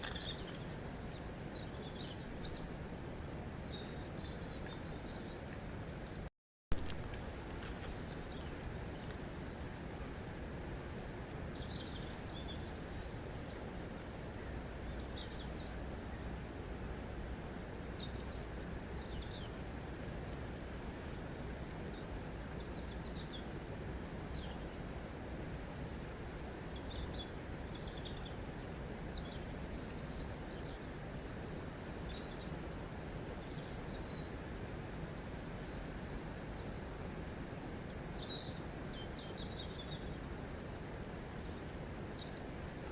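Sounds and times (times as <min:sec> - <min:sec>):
small birds chirping: 0:00.0 - 0:06.3.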